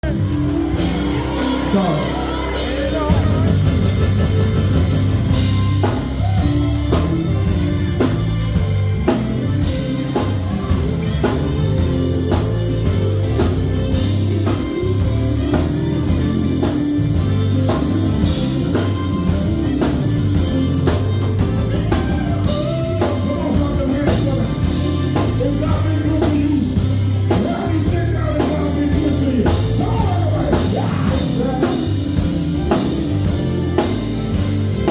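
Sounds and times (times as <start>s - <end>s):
person singing: 0.0s - 4.9s, 21.9s - 32.9s
bass line: 0.0s - 34.9s
drum kit beat: 0.0s - 34.9s.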